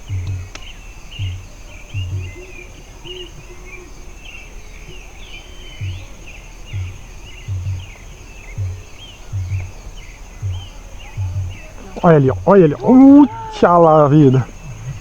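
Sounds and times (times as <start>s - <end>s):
low thumps: 0.0s - 2.9s, 4.8s - 15.0s
birds chirping and singing: 0.0s - 15.0s
high insect whine: 0.0s - 15.0s.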